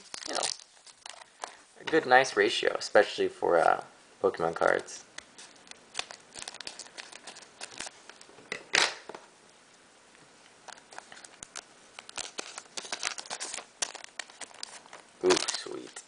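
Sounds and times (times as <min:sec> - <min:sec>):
foil pack crinkling: 0:00.0 - 0:01.6, 0:04.6 - 0:08.3, 0:10.7 - 0:16.0.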